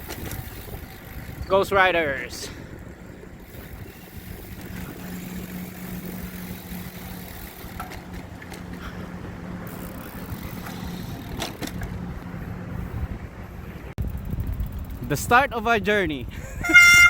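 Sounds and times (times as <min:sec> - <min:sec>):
motor vehicle running: 0:02.3 - 0:15.2.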